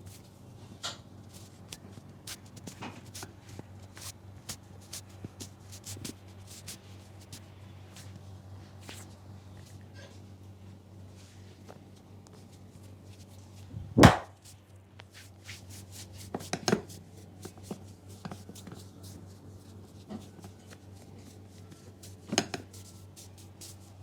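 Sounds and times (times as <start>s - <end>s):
hand slaps on head: 14.0s - 14.3s.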